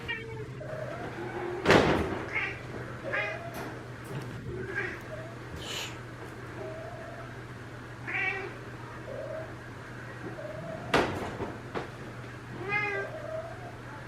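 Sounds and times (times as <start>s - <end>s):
cat meowing: 0.0s - 1.6s, 2.3s - 3.7s, 4.5s - 5.4s, 8.0s - 9.5s, 12.6s - 13.8s.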